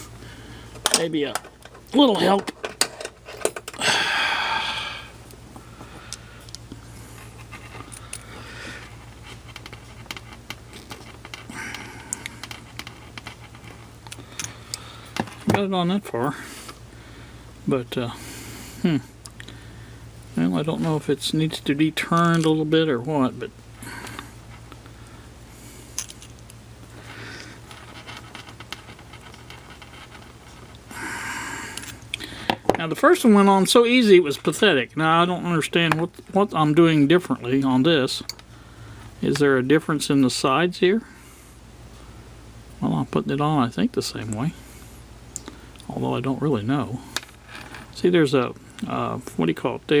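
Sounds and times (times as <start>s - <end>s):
steady low hum: 0.0s - 50.0s
breathy exhales: 3.8s - 7.2s, 11.5s - 12.6s, 23.8s - 24.4s, 30.9s - 32.7s.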